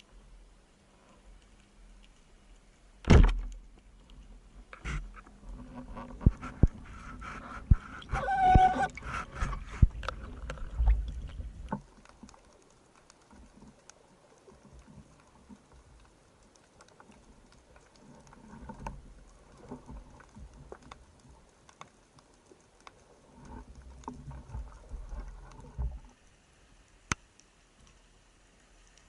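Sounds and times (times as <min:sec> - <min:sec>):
low rumbling water noise: 0:00.0 - 0:29.0
underwater clicks and crackles: 0:00.0 - 0:29.0.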